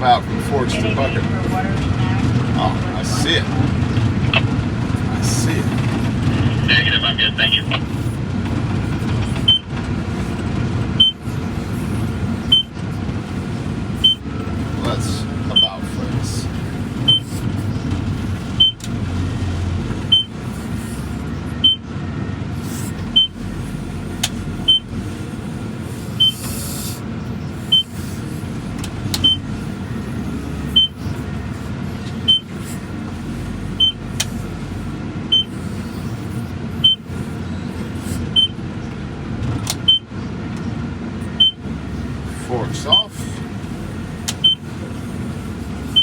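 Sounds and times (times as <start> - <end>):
skid steer engine running: 0.0 - 46.0
high-pitched warning beep: 11.0 - 11.7, 12.4 - 12.8, 14.0 - 17.4, 18.5 - 18.8, 20.1 - 20.9, 22.9 - 25.1, 27.7 - 37.2, 37.8 - 38.6, 41.3 - 43.4, 44.1 - 44.9, 45.8 - 46.0.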